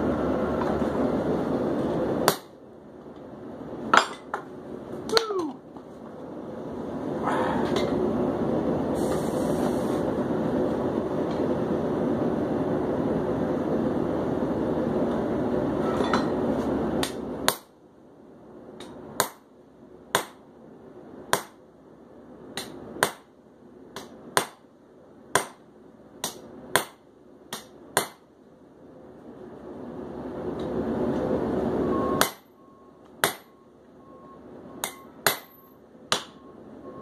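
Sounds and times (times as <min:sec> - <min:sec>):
gas forge rushing: 0:06.5 - 0:17.0.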